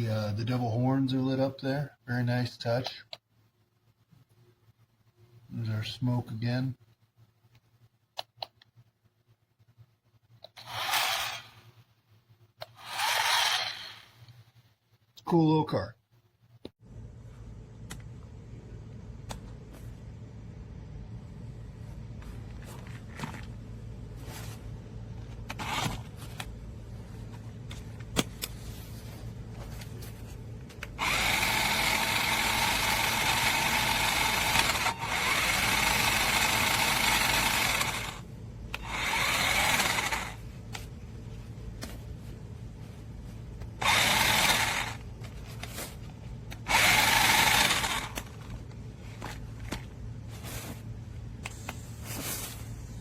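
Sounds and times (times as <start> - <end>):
toy truck electric motor whirring: 10.5 - 11.7, 12.6 - 14.3, 25.5 - 26.5, 30.9 - 40.4, 43.8 - 45.0, 46.5 - 48.5
low steady hum: 13.5 - 53.0.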